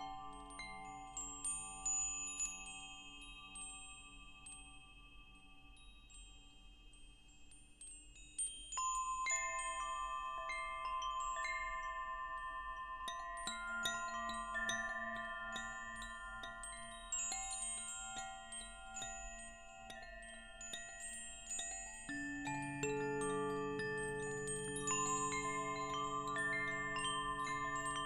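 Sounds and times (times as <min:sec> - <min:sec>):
wind chimes ringing: 0:08.4 - 0:28.0.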